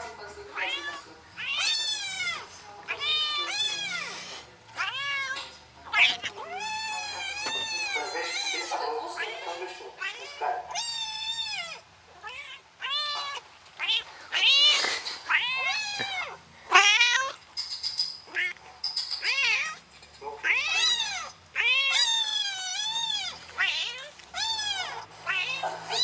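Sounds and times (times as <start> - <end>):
high-pitched cat meows: 0.6 - 4.2, 4.8 - 8.8, 10.0 - 14.7, 15.3 - 17.4, 19.2 - 19.8, 20.4 - 26.0.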